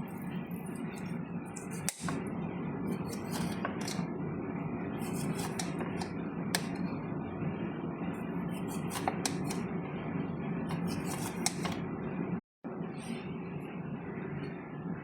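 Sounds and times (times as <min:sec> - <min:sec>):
steady background hum: 0:00.0 - 0:15.0.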